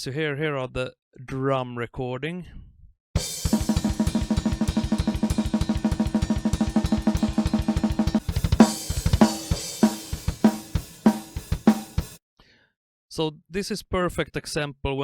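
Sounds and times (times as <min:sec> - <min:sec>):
metal drum kit playing: 0:03.2 - 0:12.2.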